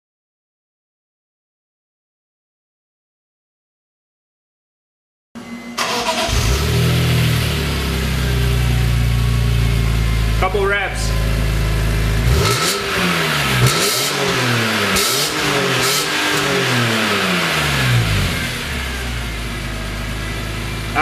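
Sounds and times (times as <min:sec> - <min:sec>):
car engine idling and revving: 0:05.8 - 0:21.0.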